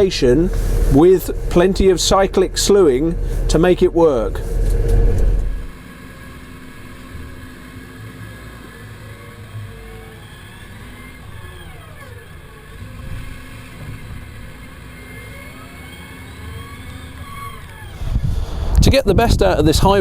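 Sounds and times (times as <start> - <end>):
whine changing pitch: 0.0 - 5.8
excavator engine drone: 0.0 - 12.8.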